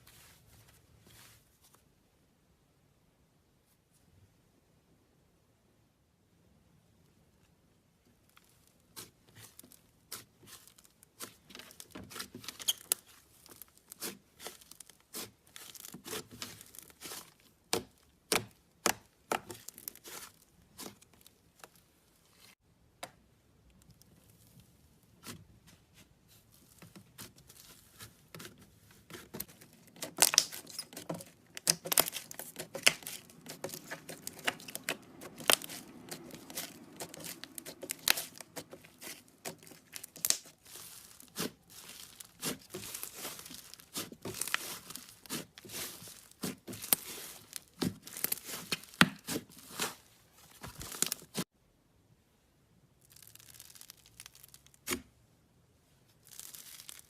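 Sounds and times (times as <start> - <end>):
slime crackling and popping: 9.0 - 21.7, 29.1 - 50.0, 53.0 - 55.0, 56.2 - 57.0.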